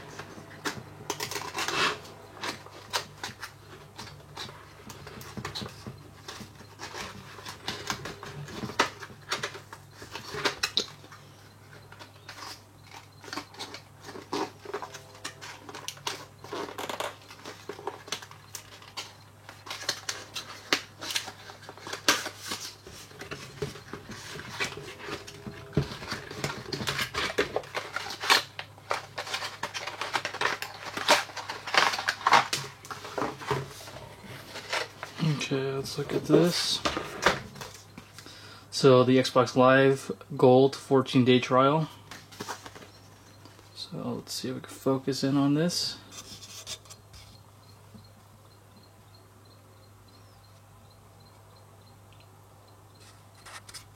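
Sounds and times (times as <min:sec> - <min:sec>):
packaging crinkling: 0:12.0 - 0:38.3.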